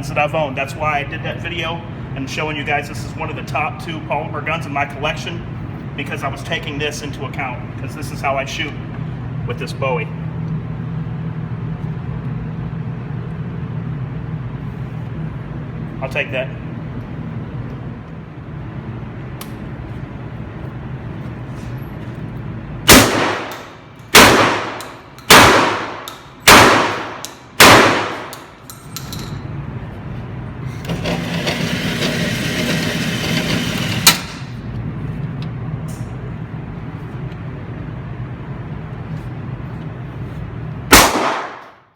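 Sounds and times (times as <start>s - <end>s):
gunshots with echo: 22.9s - 28.4s, 40.9s - 41.8s.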